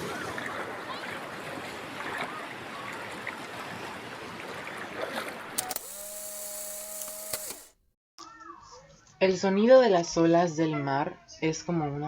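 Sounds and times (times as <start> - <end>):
electronic hum with hiss: 5.6 - 7.7
clicks: 5.6 - 7.8.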